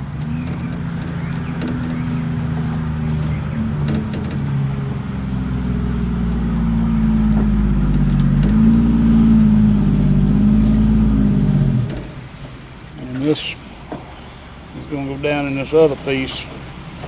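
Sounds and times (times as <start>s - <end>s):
power window motor humming: 0.0s - 12.7s.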